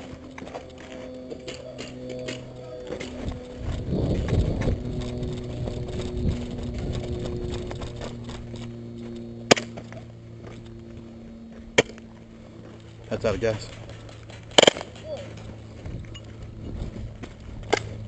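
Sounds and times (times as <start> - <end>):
rustling and knocks of movement: 0.0 - 18.0
steady low hum: 0.0 - 18.0
airsoft gun shots: 14.5 - 15.2.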